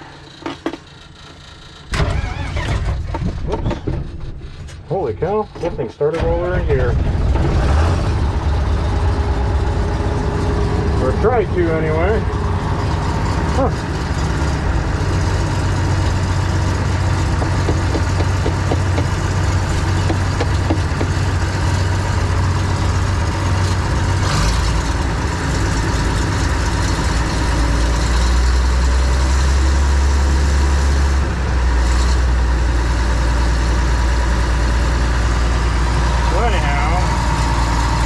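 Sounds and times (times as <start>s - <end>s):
combine harvester droning: 4.1s - 38.0s.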